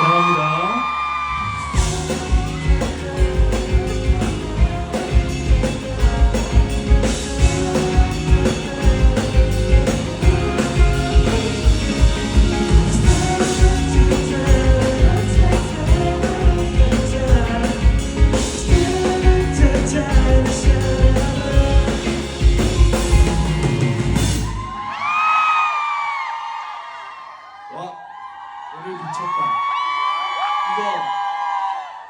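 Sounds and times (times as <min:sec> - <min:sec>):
crowd cheering: 0:00.0 - 0:17.3, 0:21.6 - 0:32.0
live rock band playing: 0:01.6 - 0:24.8
person singing: 0:01.7 - 0:24.0.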